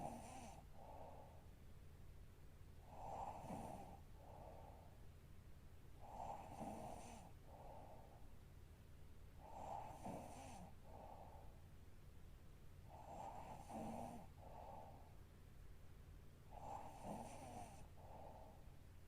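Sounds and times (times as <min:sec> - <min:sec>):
woman snoring faintly: 0:09.5 - 0:10.8, 0:13.0 - 0:14.4, 0:16.5 - 0:18.6.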